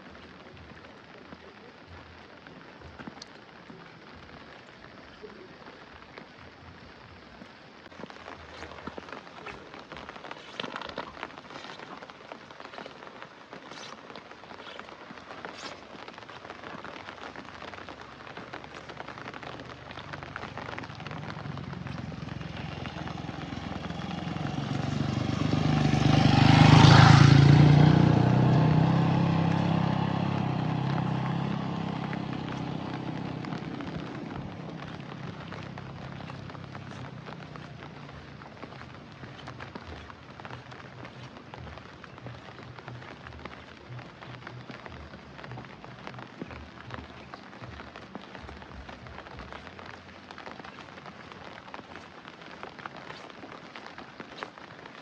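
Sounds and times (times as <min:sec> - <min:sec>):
steady rain: 0:00.0 - 0:55.0
vehicle passing on wet road: 0:00.0 - 0:55.0.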